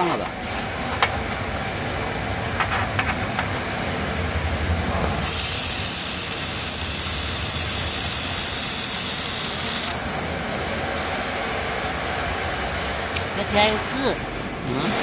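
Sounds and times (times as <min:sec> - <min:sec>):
gas blowing through nozzle: 0:05.0 - 0:10.4
laser welding gun hissing: 0:05.0 - 0:10.4.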